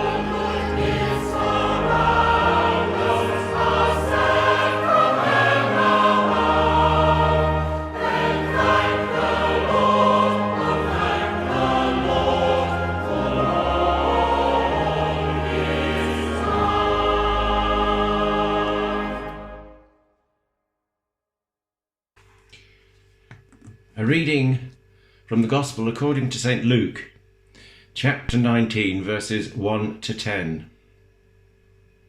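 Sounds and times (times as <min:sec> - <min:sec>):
choir singing a hymn: 0:00.0 - 0:19.9
instrumental accompaniment: 0:00.0 - 0:20.0.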